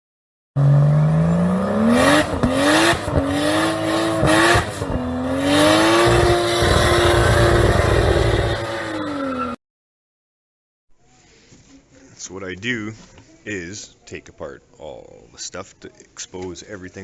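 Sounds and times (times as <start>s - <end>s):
car engine accelerating hard: 0.6s - 9.6s.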